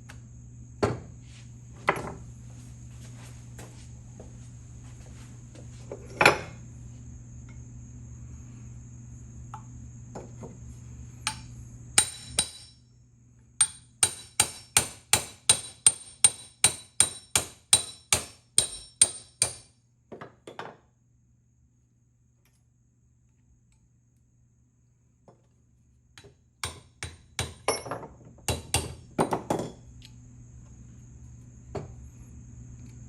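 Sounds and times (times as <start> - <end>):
hammer striking metal: 11.3 - 12.8, 13.6 - 19.6.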